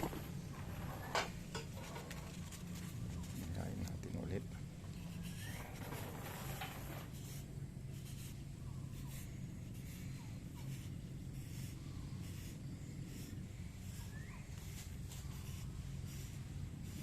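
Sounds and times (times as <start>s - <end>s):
steady low hum: 0.0s - 17.0s
brush scratching on sandpaper: 4.9s - 17.0s.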